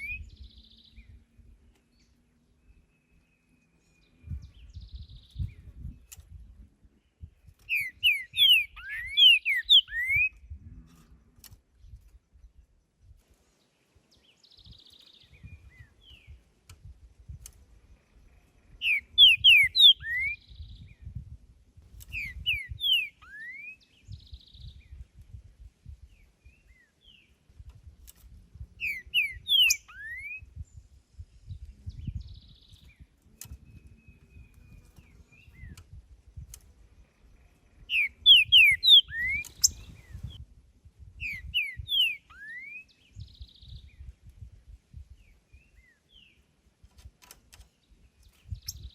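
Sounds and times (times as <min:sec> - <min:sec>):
bird singing whistled notes: 0:00.0 - 0:06.3, 0:07.0 - 0:10.6, 0:14.1 - 0:16.4, 0:18.2 - 0:21.3, 0:22.0 - 0:27.4, 0:28.6 - 0:40.4, 0:41.2 - 0:46.4, 0:47.8 - 0:48.9.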